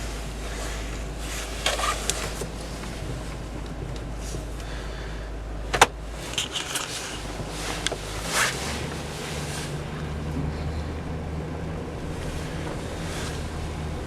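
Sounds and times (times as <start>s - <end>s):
truck engine running: 0.0s - 14.0s
sharp clunk: 5.7s - 6.0s.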